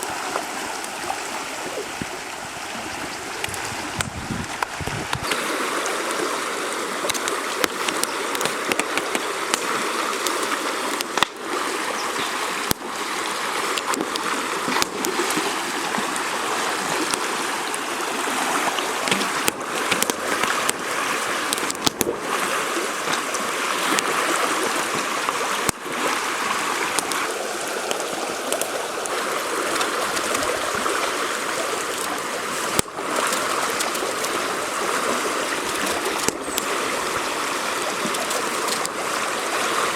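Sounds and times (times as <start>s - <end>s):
river rushing: 0.0s - 39.9s
small sharp ticks: 7.0s - 11.4s, 13.7s - 15.4s, 19.0s - 20.8s, 21.5s - 22.2s, 31.9s - 34.4s, 35.6s - 36.8s, 38.1s - 39.0s.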